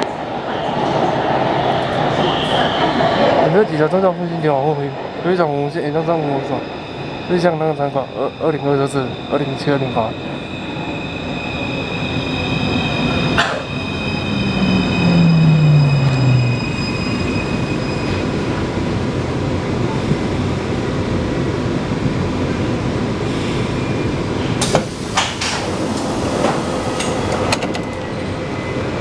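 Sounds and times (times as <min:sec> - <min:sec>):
train inverter whining: 0:06.3 - 0:18.6.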